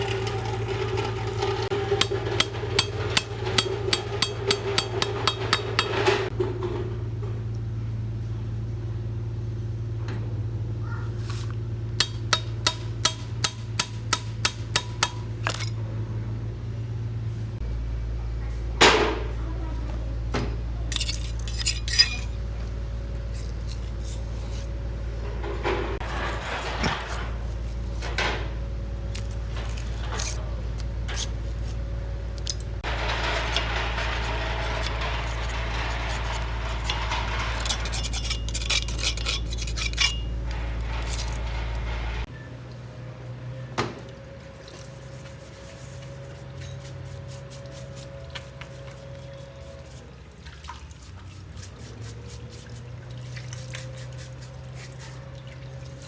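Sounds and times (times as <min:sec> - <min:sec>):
metal tools clinking and scraping: 0:00.0 - 0:06.4, 0:11.2 - 0:15.9, 0:20.9 - 0:31.8, 0:32.4 - 0:42.3, 0:46.2 - 0:50.0.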